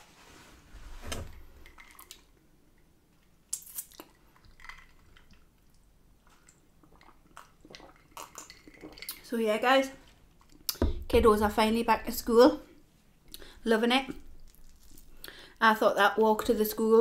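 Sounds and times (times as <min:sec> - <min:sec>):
person chewing close up: 0:03.5 - 0:09.2, 0:14.4 - 0:15.4.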